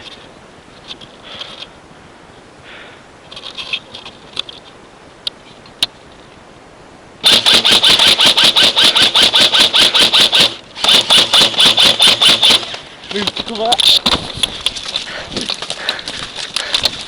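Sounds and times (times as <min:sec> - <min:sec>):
airsoft rifle full-auto burst: 0:07.2 - 0:12.8.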